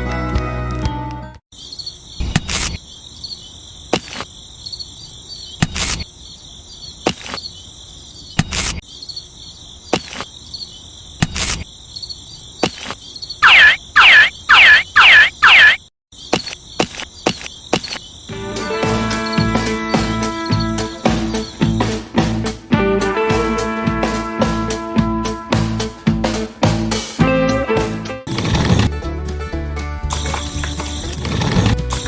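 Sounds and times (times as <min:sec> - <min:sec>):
cricket chirring: 0:01.5 - 0:18.3.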